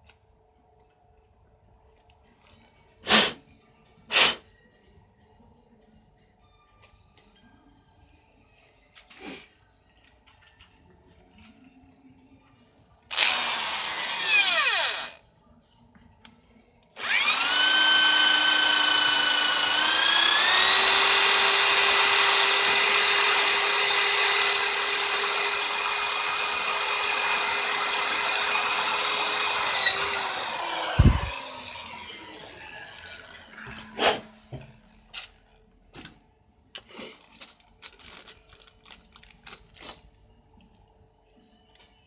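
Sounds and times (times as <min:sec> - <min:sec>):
power tool motor whine: 0:13.1 - 0:15.2, 0:17.0 - 0:33.8.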